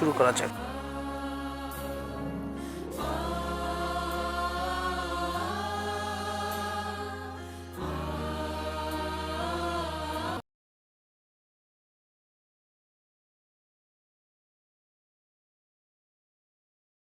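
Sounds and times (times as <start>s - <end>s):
choir singing sustained chords: 0.0s - 10.4s.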